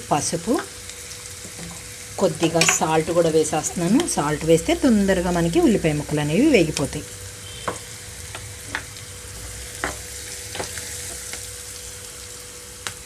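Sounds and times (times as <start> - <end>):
vegetables sizzling in hot oil: 0.0 - 13.0
spatula tapping against pan: 9.8 - 10.0.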